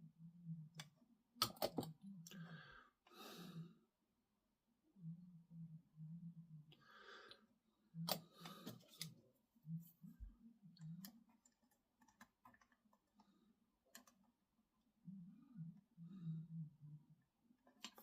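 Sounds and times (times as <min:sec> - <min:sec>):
plastic parts clicking and tapping: 0:00.8 - 0:02.0, 0:10.8 - 0:13.2, 0:17.6 - 0:18.0.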